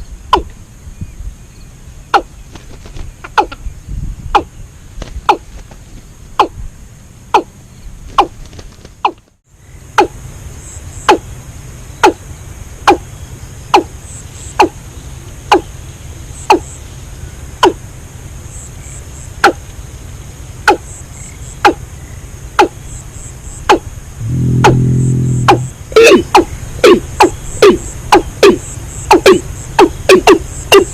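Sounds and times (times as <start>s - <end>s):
sharp ringing strikes: 24.2s - 26.2s
faint high chirping: 24.2s - 29.4s.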